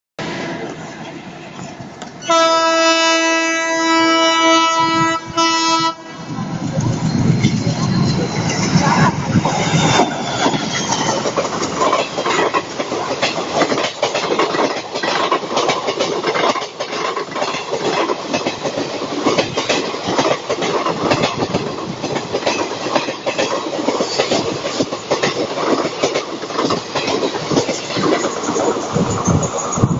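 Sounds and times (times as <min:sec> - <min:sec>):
train wheels clattering over rail joints: 0:06.8 - 0:29.9.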